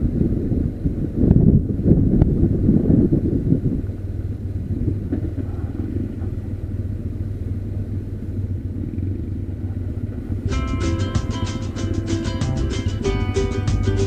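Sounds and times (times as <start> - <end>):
motorcycle engine running: 0.0 - 14.0
wind rumble on microphone: 0.0 - 14.0.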